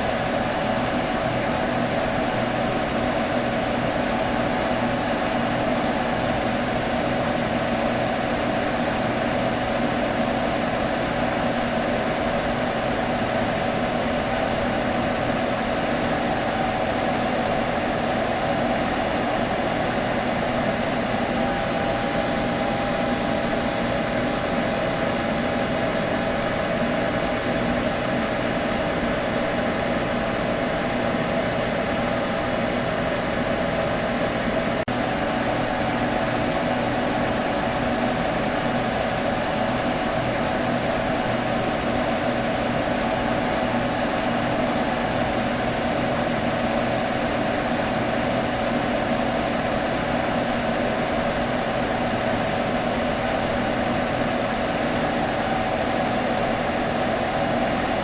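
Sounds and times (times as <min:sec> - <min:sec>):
computer humming: 0:48.7 - 0:58.0.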